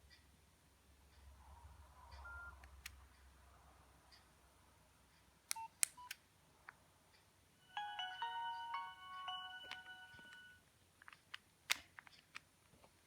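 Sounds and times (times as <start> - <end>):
phone key beeps: 2.2 - 2.8, 7.7 - 10.6
keypad clicks: 7.8 - 12.5.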